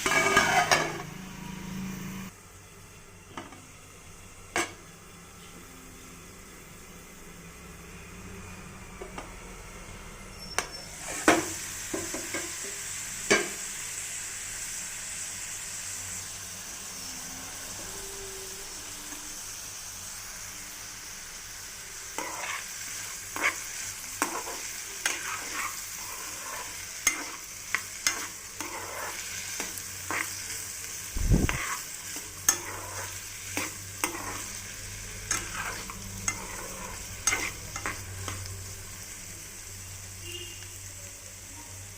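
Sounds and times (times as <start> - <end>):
spatula scraping and knocking pan: 0.0 - 1.1, 23.3 - 30.4, 31.4 - 34.5, 35.3 - 38.0
potatoes sizzling in oil: 0.0 - 41.9.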